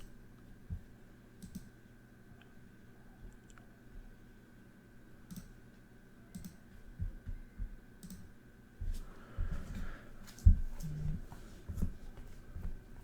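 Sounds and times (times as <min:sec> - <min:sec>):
quiet clicks: 0:05.3 - 0:05.6.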